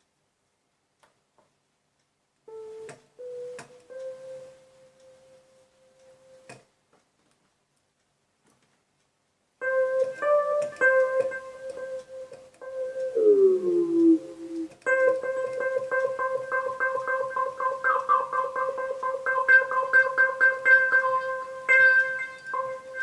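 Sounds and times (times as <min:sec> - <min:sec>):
keyboard notes: 0:02.5 - 0:06.7, 0:09.6 - 0:23.0.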